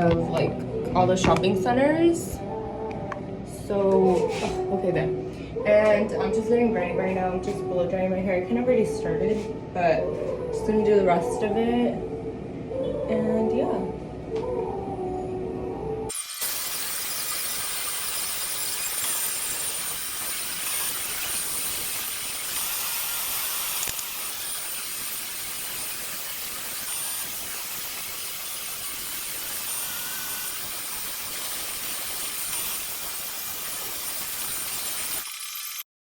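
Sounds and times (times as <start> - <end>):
hair dryer blowing: 16.2 - 35.2.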